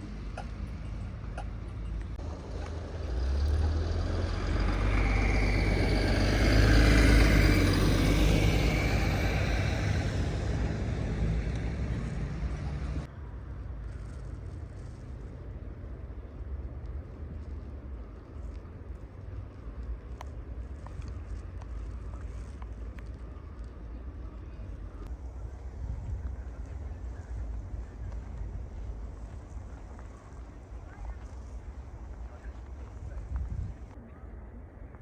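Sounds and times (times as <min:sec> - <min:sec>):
car driving past: 0:02.2 - 0:13.1.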